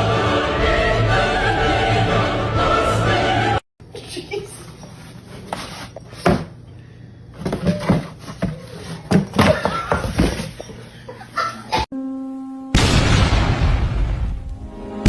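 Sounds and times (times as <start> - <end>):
knocks and thuds: 7.4 - 10.7.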